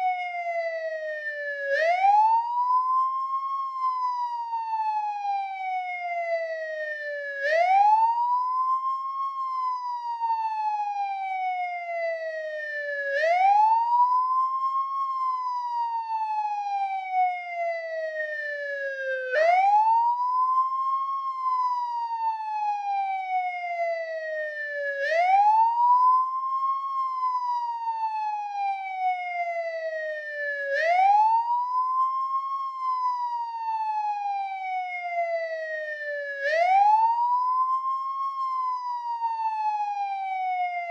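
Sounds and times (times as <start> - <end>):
police siren wailing: 0.0 - 40.9.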